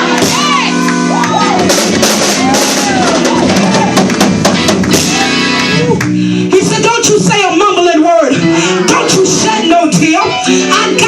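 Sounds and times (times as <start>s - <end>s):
drum kit playing a beat: 0.0s - 7.9s
sustained keyboard chords: 0.0s - 11.0s.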